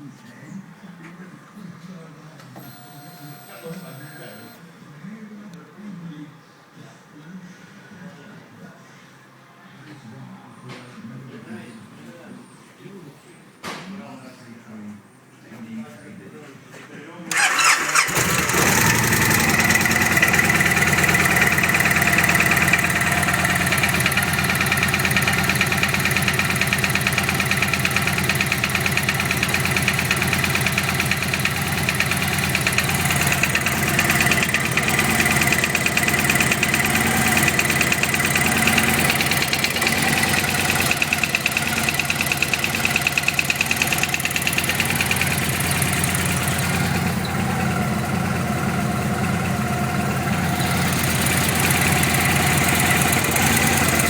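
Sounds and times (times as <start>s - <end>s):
engine idling with rapid knock: 2.6s - 4.6s, 17.3s - 54.0s.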